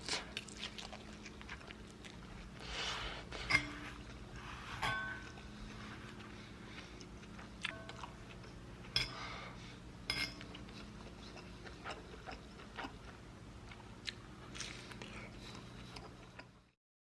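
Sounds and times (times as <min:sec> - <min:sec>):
chewing: 0:00.0 - 0:04.5, 0:05.2 - 0:09.2, 0:10.4 - 0:16.7
low steady hum: 0:00.0 - 0:16.8
cutlery clinking on dishes: 0:03.4 - 0:03.9, 0:04.8 - 0:05.4, 0:08.9 - 0:09.3, 0:10.1 - 0:10.6.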